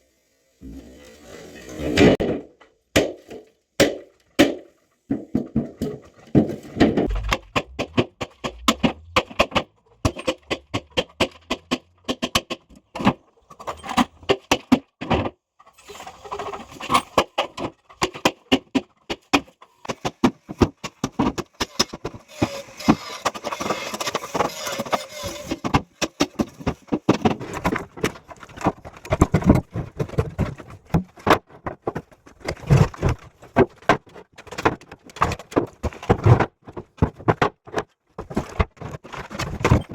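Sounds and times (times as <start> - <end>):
sharp metal strikes: 7.1 - 10.6.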